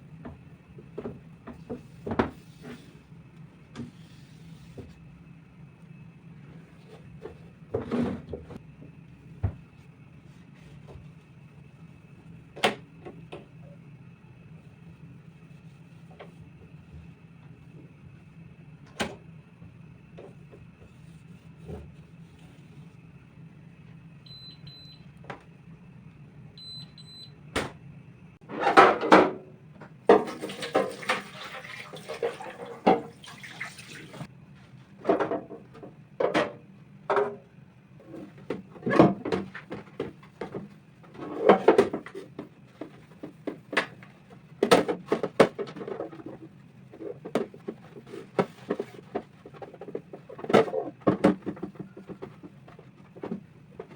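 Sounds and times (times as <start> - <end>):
kitchen items knocking and clattering: 30.1 - 34.3.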